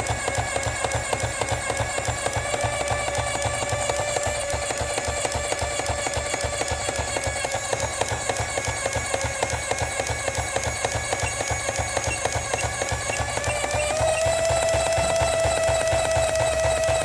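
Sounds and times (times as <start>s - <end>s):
electric toy clicking rapidly: 0.0s - 17.0s
steady ringing tone: 9.8s - 15.4s.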